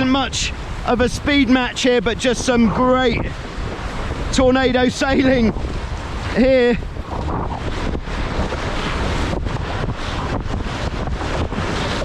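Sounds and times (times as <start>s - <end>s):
water rushing along hulls: 0.0s - 12.0s
wind buffeting microphone: 0.0s - 12.0s.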